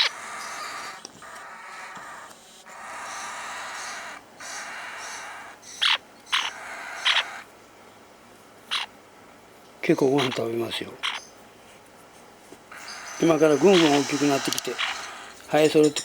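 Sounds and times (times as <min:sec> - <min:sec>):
parakeet raspy chatter: 0:00.0 - 0:07.5, 0:08.7 - 0:09.0, 0:10.0 - 0:11.4, 0:12.7 - 0:16.0
parakeet sharp calls: 0:00.0 - 0:07.6, 0:08.6 - 0:09.0, 0:10.0 - 0:11.4, 0:12.7 - 0:16.0.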